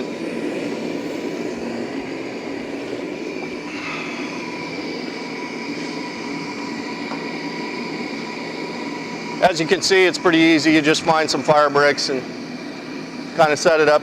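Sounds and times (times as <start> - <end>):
gas burner hissing: 0.0 - 14.0.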